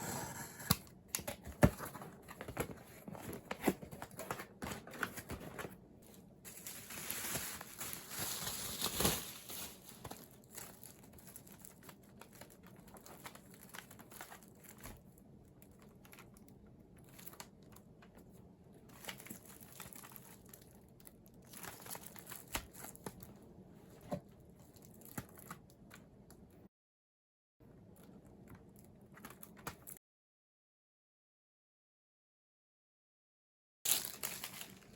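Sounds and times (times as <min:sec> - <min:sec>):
packaging crinkling: 0:06.5 - 0:16.4, 0:33.9 - 0:34.9.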